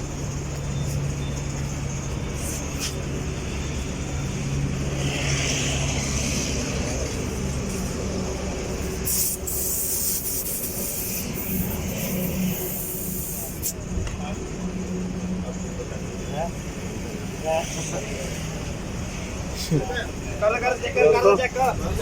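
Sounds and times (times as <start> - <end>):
air compressor humming: 8.1 - 13.8
air hissing: 8.7 - 13.9.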